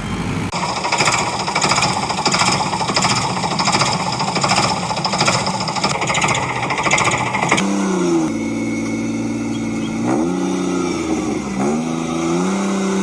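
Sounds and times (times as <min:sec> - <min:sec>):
rapid mechanical rattling: 0:00.0 - 0:07.8.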